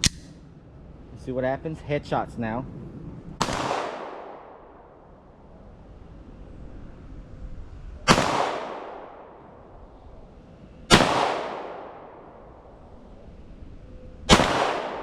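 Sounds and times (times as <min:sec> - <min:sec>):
pistol shots with echo: 0:03.4 - 0:04.8, 0:08.1 - 0:09.4, 0:10.9 - 0:12.4, 0:14.3 - 0:15.0.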